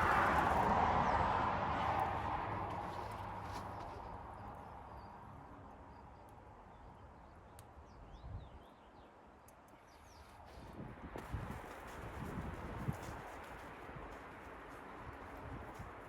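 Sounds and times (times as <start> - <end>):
wind noise: 0.0 - 3.7, 10.5 - 16.0.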